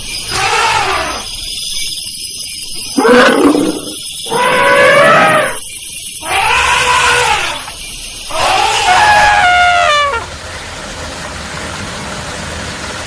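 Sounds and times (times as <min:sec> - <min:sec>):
elephant trumpeting: 0:00.3 - 0:01.3, 0:03.0 - 0:05.6, 0:06.2 - 0:07.7, 0:08.3 - 0:10.3.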